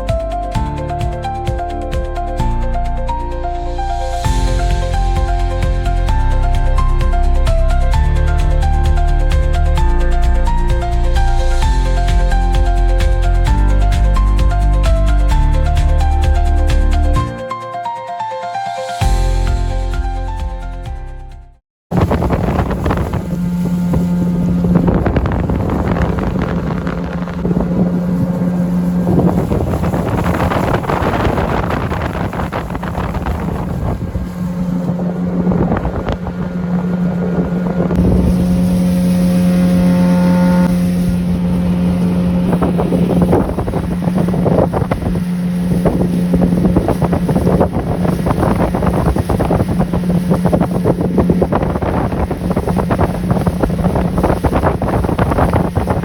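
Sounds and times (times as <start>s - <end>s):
motorboat engine running: 0.0s - 17.4s, 21.9s - 56.0s
wind buffeting microphone: 21.9s - 56.0s.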